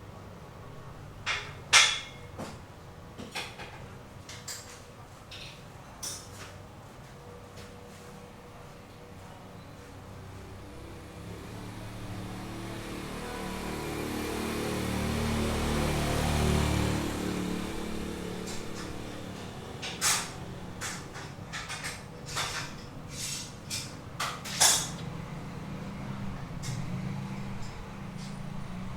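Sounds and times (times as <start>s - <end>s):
vehicle engine passing by: 10.0s - 21.2s, 24.8s - 28.9s.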